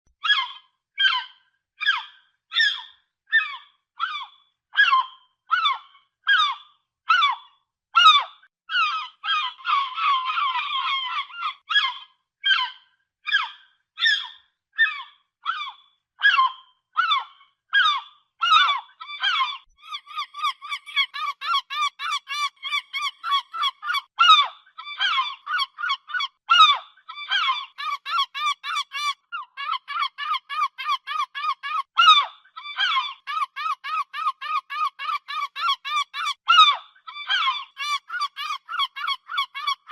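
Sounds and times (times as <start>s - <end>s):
seagulls calling: 19.2s - 24.1s, 27.2s - 31.9s, 32.7s - 36.7s, 37.3s - 39.9s.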